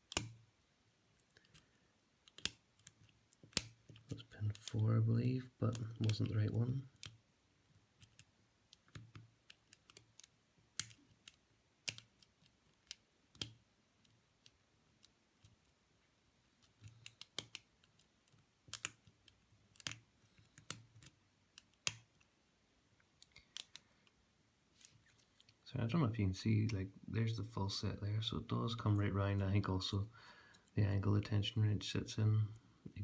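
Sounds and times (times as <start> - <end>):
lock pick metallic clicks: 0.0 - 0.4, 1.2 - 4.8, 8.0 - 13.6, 16.6 - 22.2, 23.2 - 24.0.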